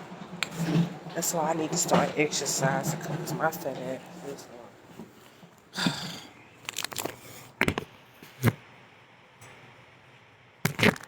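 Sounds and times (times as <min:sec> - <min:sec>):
breathy vocal sound: 0:05.7 - 0:06.4
food clicks and cracks: 0:06.6 - 0:07.8.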